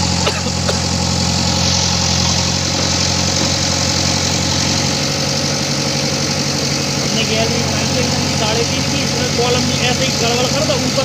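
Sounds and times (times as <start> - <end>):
excavator diesel engine running: 0.0 - 11.0.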